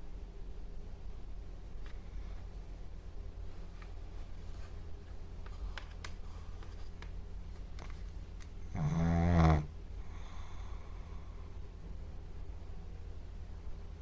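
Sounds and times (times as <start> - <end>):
faint steady low hum: 0.0 - 14.0
dog snoring: 8.7 - 10.7.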